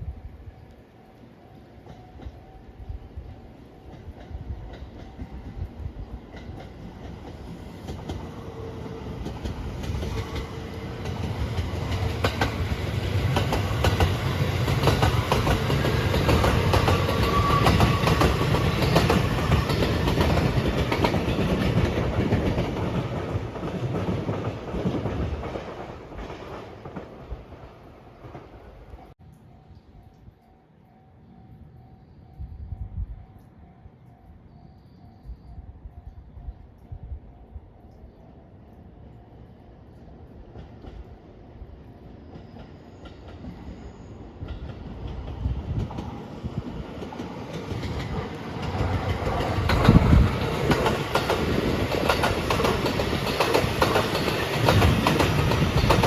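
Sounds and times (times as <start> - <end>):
electric train passing: 0.0 - 56.0
wheels clacking over rail joints: 6.3 - 27.6, 44.4 - 56.0.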